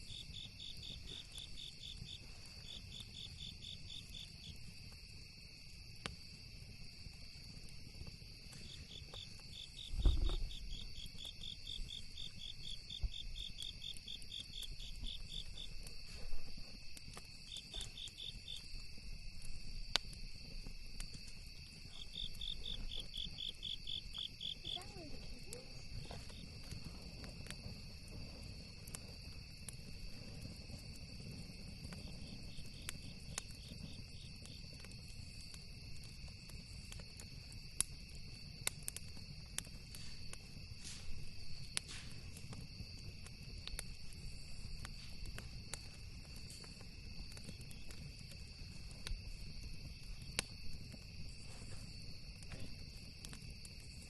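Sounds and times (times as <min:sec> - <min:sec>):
campfire crackling and popping: 0:00.0 - 0:54.0
insects droning: 0:00.0 - 0:54.0
insect fast chirps: 0:08.7 - 0:15.7, 0:21.9 - 0:24.8
dull thump: 0:09.9 - 0:10.5.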